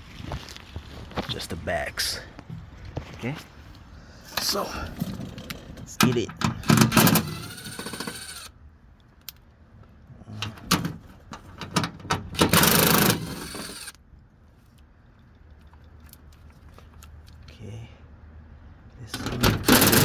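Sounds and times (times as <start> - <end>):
rapid mechanical clicking and rattling: 4.4 - 8.5, 10.4 - 14.0, 19.2 - 20.0.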